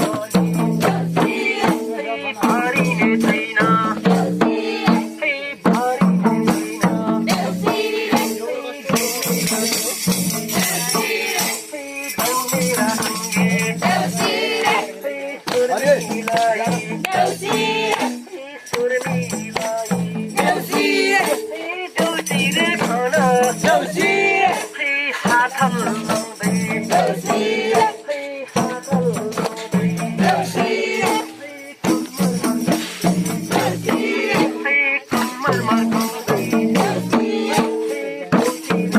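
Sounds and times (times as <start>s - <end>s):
jingling shaken percussion: 0.0s - 38.9s
voices singing: 0.0s - 38.9s.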